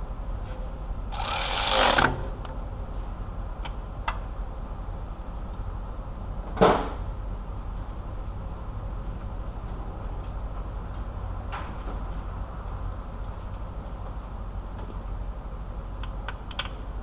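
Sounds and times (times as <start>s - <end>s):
small power tool running: 1.1s - 2.2s.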